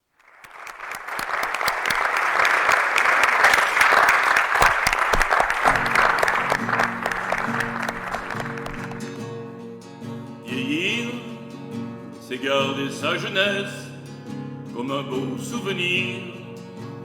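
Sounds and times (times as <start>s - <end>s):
audience applauding: 0.1s - 9.2s.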